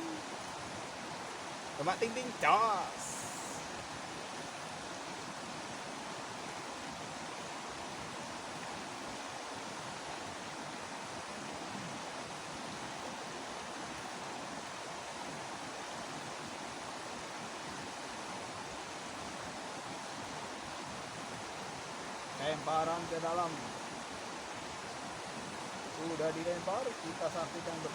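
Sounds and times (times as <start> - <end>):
stream water flowing: 0.0 - 27.9.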